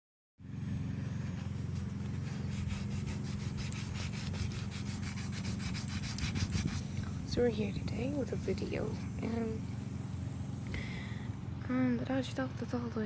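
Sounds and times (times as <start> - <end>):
steady low hum: 0.4 - 13.0
sandpaper rubbing on metal rim: 1.3 - 9.2.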